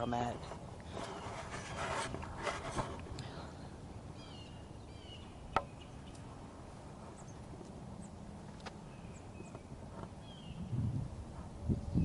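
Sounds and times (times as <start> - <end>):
bird chirps: 4.1 - 6.3, 8.8 - 10.8.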